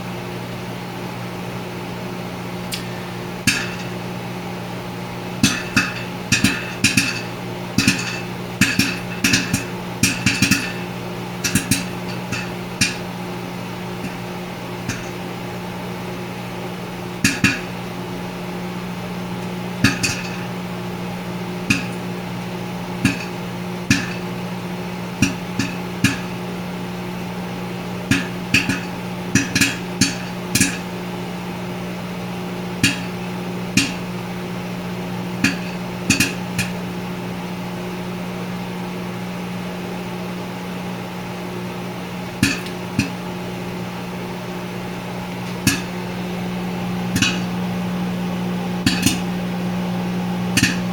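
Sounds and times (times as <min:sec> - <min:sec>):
microwave oven humming: 0:00.0 - 0:50.9
popcorn kernels popping: 0:02.7 - 0:04.1, 0:05.3 - 0:13.2, 0:13.8 - 0:15.4, 0:17.2 - 0:17.9, 0:19.3 - 0:26.5, 0:28.0 - 0:30.9, 0:32.7 - 0:34.1, 0:35.4 - 0:36.8, 0:42.4 - 0:43.3, 0:45.3 - 0:46.5, 0:47.1 - 0:47.6, 0:48.8 - 0:49.4, 0:50.5 - 0:50.9.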